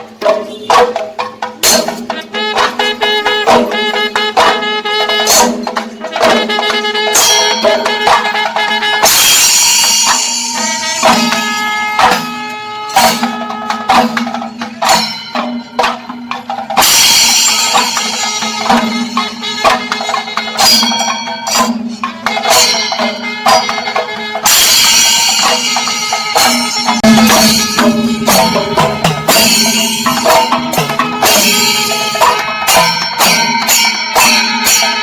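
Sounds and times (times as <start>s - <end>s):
drums beaten in fast rhythm: 0.0s - 35.0s
hand cymbals ringing: 0.0s - 35.0s.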